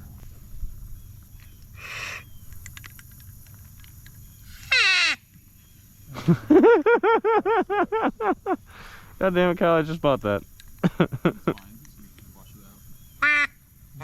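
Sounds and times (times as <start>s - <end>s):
duck call quacking: 4.7s - 5.2s, 13.2s - 13.6s.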